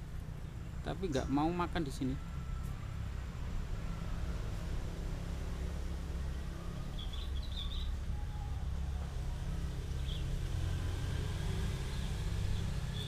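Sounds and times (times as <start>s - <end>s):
faint bird chirp: 6.2s - 9.1s.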